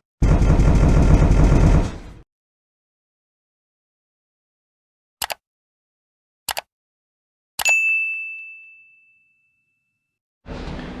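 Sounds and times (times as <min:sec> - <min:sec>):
short clicks: 0:05.2 - 0:05.4, 0:06.5 - 0:06.7
metallic ding: 0:07.6 - 0:09.7.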